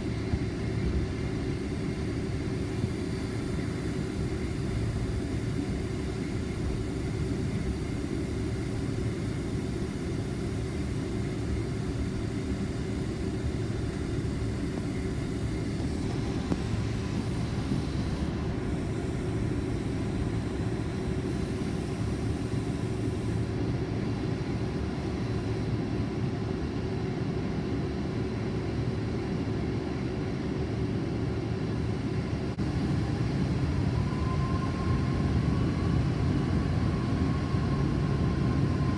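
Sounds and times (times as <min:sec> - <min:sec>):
jet engines rumbling: 0:00.0 - 0:27.6, 0:30.6 - 0:38.9
constant hum: 0:00.0 - 0:38.9.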